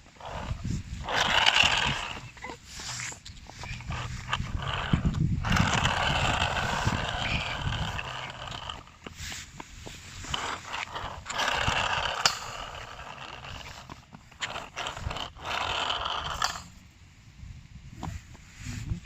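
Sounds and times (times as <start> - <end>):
toy car motor whirring: 0.0 - 16.8
toy car clicks: 0.2 - 2.5, 3.3 - 8.9, 10.3 - 16.7.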